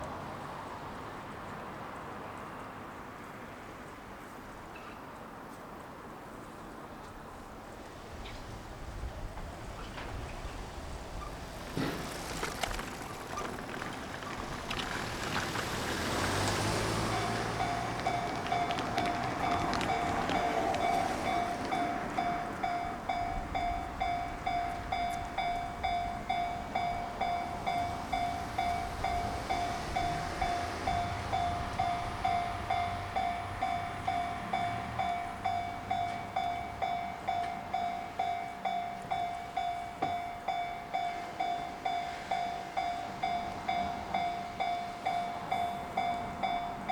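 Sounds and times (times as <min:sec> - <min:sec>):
level crossing warning bell: 0:14.8 - 0:46.9.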